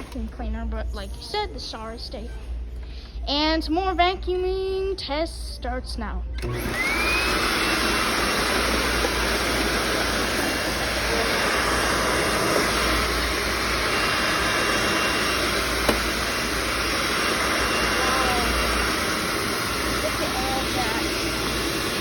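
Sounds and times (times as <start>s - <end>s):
vacuum cleaner running: 6.4s - 22.0s.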